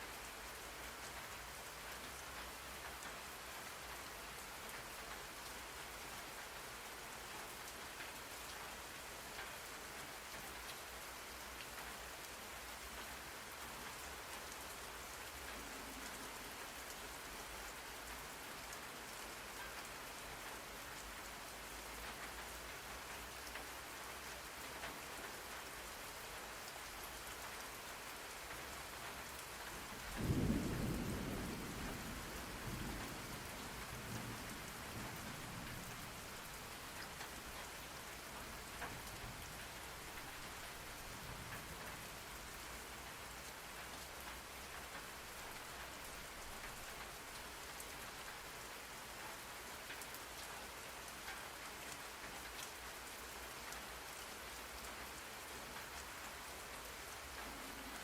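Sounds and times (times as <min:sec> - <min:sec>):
steady rain: 0:00.0 - 0:58.0
thunderclap rumbling: 0:30.2 - 0:33.1.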